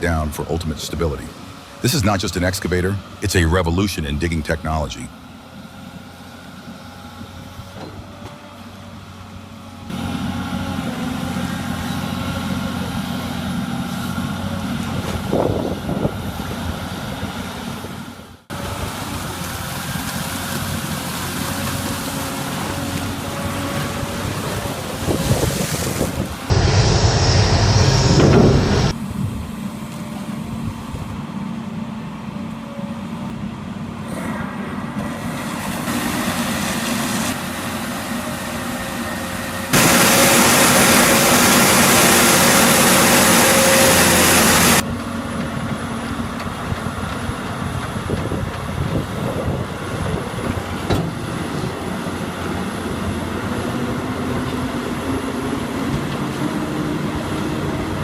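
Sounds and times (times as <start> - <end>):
heavy machinery engines running: 26.5 - 29.0, 39.2 - 58.0
loud even rush of noise: 26.5 - 29.1, 39.7 - 44.8.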